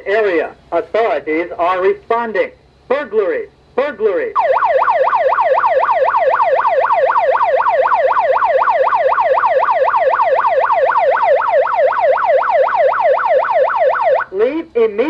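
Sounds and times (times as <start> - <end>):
fast warbling siren: 4.3 - 14.4.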